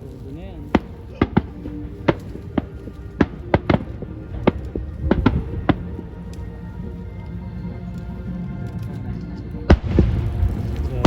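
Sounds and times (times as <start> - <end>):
background music: 0.0 - 11.0
fireworks exploding: 0.7 - 6.4, 9.7 - 11.0.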